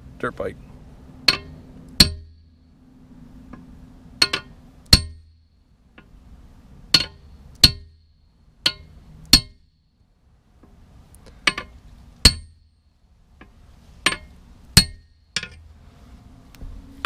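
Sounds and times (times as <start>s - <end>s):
hammer clanging on metal: 1.2s - 2.4s, 4.2s - 5.3s, 6.9s - 7.9s, 8.6s - 9.6s, 11.4s - 12.6s, 14.0s - 15.7s.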